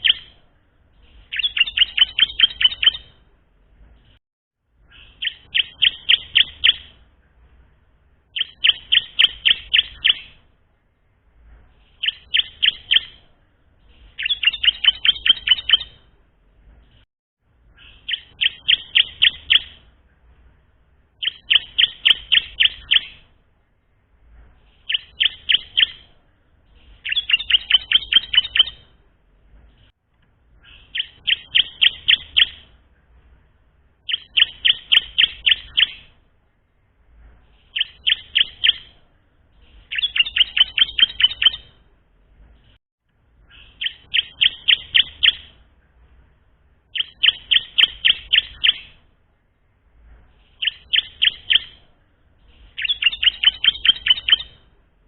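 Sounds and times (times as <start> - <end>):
young bird chirping song: 0.0 - 3.2, 4.8 - 7.1, 8.3 - 10.5, 11.7 - 16.1, 17.7 - 19.9, 21.2 - 23.3, 24.6 - 29.0, 30.6 - 32.8, 34.0 - 36.2, 37.5 - 41.8, 43.4 - 45.7, 46.9 - 49.1, 50.3 - 54.8.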